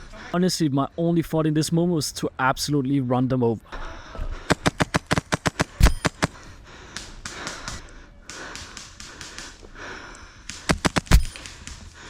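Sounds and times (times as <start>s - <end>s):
airsoft gun shots: 4.5s - 6.4s, 10.5s - 12.0s
heavy breathing: 6.2s - 12.0s.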